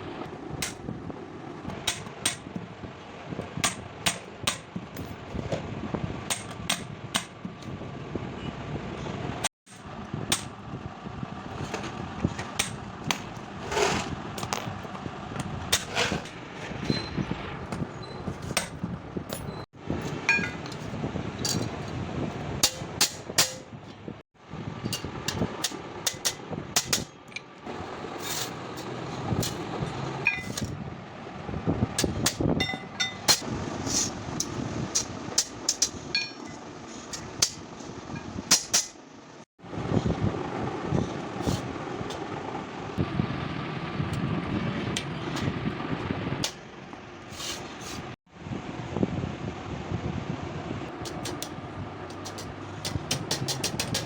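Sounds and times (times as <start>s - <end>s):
traffic din: 0.0s - 54.0s
hand tools tapping on metal: 1.7s - 2.8s, 3.4s - 5.6s, 6.3s - 7.7s, 18.4s - 22.0s, 24.9s - 27.5s, 32.0s - 33.4s, 34.4s - 37.6s, 51.0s - 54.0s.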